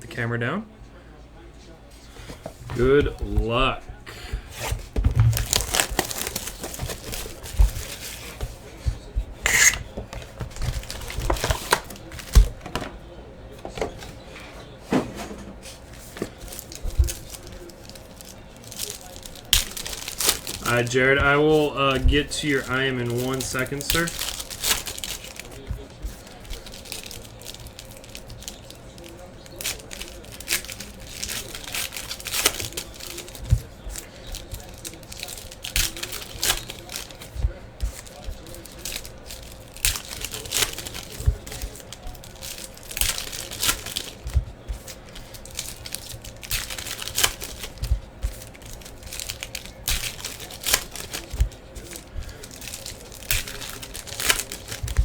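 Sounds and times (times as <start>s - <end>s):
cardboard and wrappers rubbing: 1.9s - 55.0s
wrapper rustle: 2.0s - 55.0s
soft thumps: 2.2s - 18.5s, 47.7s - 48.6s.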